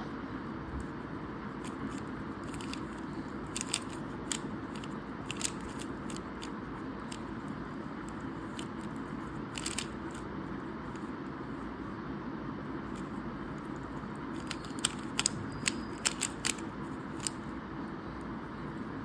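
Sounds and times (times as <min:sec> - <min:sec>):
puzzle cube layers clicking: 0:01.6 - 0:07.3, 0:08.1 - 0:10.2, 0:13.8 - 0:17.5.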